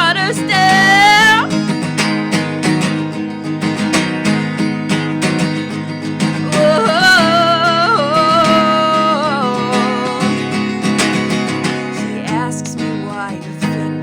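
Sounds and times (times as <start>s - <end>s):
person singing: 0.0s - 1.5s, 6.4s - 14.0s
acoustic guitar strumming: 0.0s - 14.0s.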